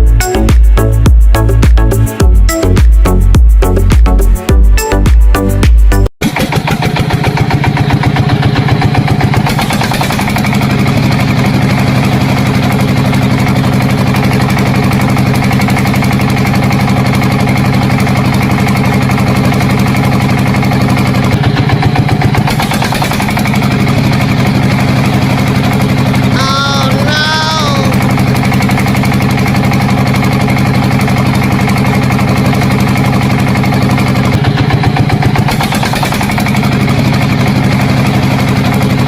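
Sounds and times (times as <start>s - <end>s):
small engine running: 6.2s - 39.0s.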